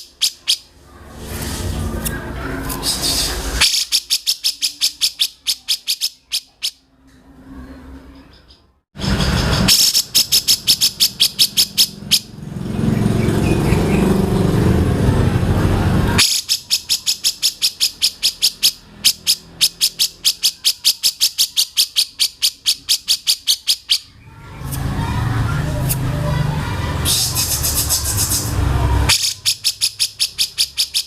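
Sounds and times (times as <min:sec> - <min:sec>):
sharp high chirps: 0:16.2 - 0:24.2.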